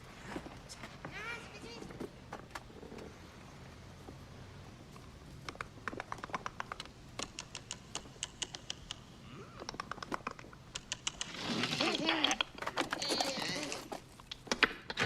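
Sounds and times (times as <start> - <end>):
rapid irregular clicks: 4.9 - 15.0.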